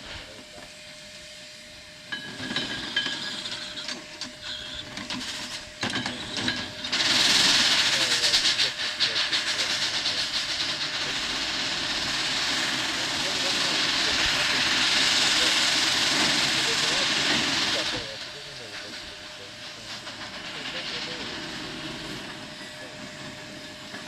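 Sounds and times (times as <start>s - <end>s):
loud pulsing steam hiss: 0.0s - 24.0s
steam shovel clanks: 2.1s - 19.0s.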